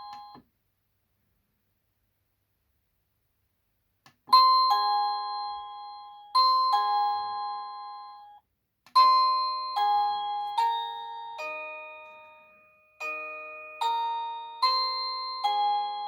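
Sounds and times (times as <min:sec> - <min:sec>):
doorbell chime tune: 0:00.0 - 0:00.4, 0:04.3 - 0:08.4, 0:09.0 - 0:16.0
two-note doorbell ding-dong: 0:09.0 - 0:16.0.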